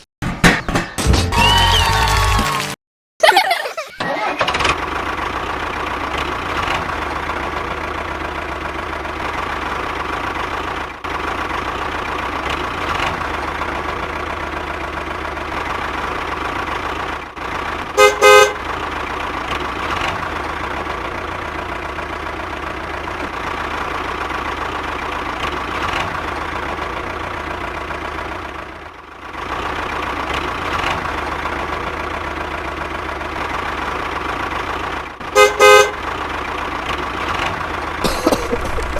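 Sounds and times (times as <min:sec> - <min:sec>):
model tractor engine droning: 0:04.0 - 0:38.9
loud horn beeps: 0:18.0 - 0:18.7, 0:35.3 - 0:36.0.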